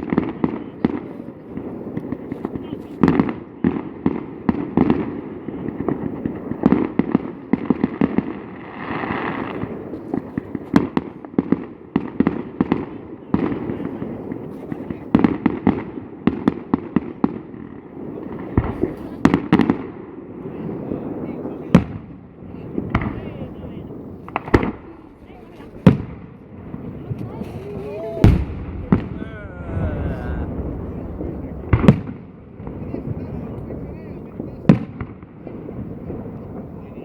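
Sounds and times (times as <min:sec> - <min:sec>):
fireworks bangs and crackling: 0:00.0 - 0:37.0
fireworks hissing: 0:26.8 - 0:31.9
steady low rumble: 0:28.2 - 0:33.7.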